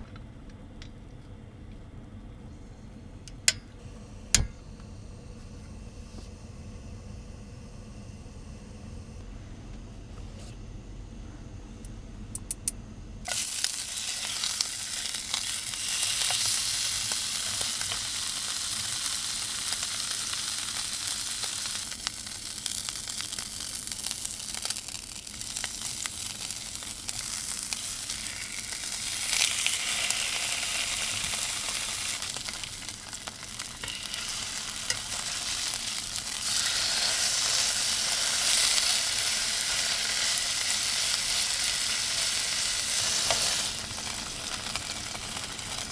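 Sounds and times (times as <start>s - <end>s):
food sizzling in a pan: 13.3s - 45.9s.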